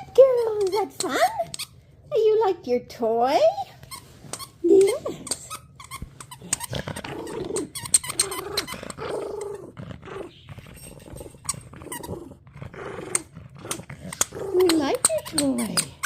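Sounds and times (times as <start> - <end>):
squeaky toy squeaks and clicks: 0.0 - 1.8, 3.7 - 9.0, 13.1 - 16.0
dog growling in play: 6.3 - 16.0.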